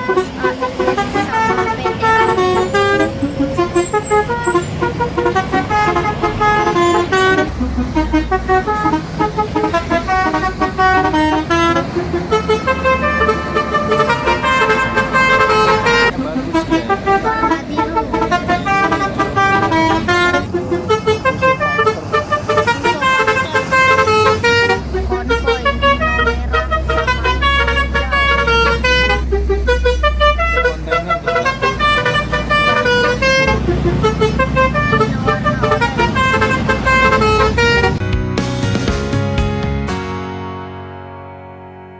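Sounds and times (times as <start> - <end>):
truck air horn toots: 0.0 - 38.0
low steady rumble: 23.9 - 35.0.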